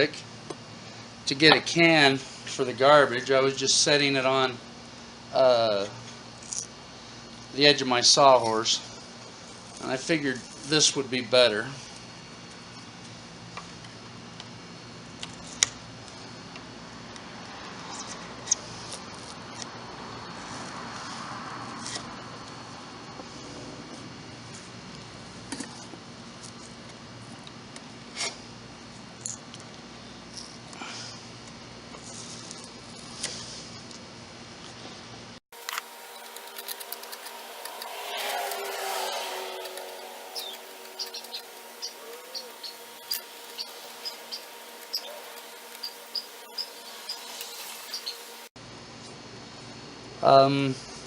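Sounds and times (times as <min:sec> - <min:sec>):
faint steady hum: 0:00.0 - 0:51.0
high-pitched chirps: 0:36.0 - 0:48.5.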